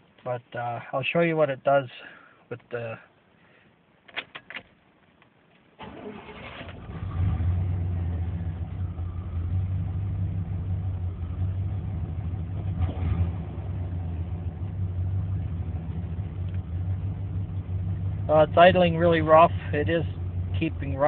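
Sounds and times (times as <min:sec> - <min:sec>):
starter motor cranking: 0:05.8 - 0:07.2
engine rough idle: 0:08.0 - 0:21.0.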